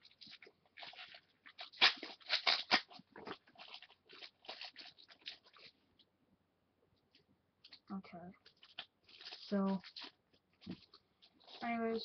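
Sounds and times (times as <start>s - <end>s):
plastic crinkling and clicking: 0.0s - 6.1s, 7.0s - 12.0s.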